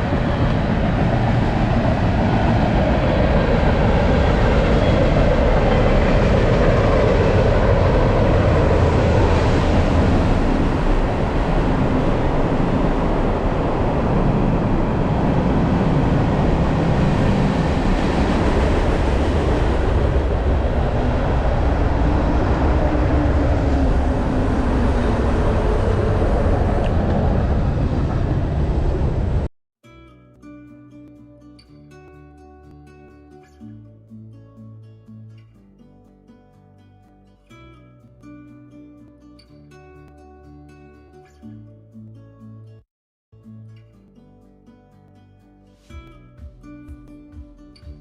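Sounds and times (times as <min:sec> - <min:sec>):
wind rumbling on microphone: 0:00.0 - 0:29.5.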